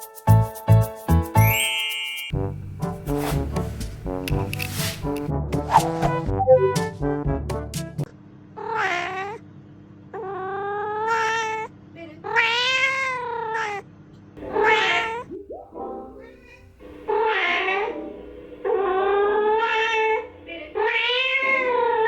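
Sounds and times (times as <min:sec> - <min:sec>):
music: 0:00.0 - 0:08.1, 0:14.4 - 0:20.8
cat meowing: 0:08.6 - 0:09.4, 0:10.2 - 0:13.8, 0:14.4 - 0:15.3, 0:17.1 - 0:18.1, 0:18.7 - 0:22.0.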